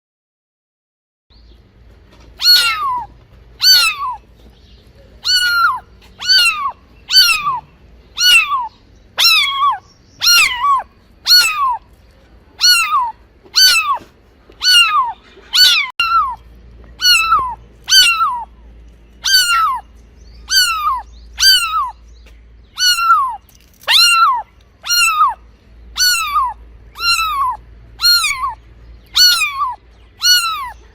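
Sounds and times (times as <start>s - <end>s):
kitten meowing: 2.4s - 4.2s, 5.2s - 11.9s, 12.6s - 16.4s, 17.0s - 18.5s, 19.2s - 19.9s, 20.5s - 22.0s, 22.8s - 30.9s.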